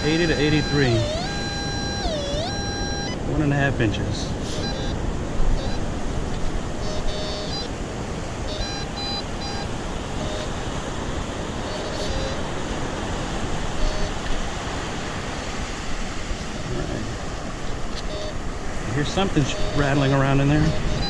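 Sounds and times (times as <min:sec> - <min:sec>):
metal detector beeps: 0:00.0 - 0:03.2, 0:04.5 - 0:06.0, 0:06.8 - 0:07.7, 0:08.5 - 0:10.6, 0:11.6 - 0:14.3, 0:17.9 - 0:18.4, 0:19.2 - 0:21.0
surf noise: 0:00.0 - 0:21.0.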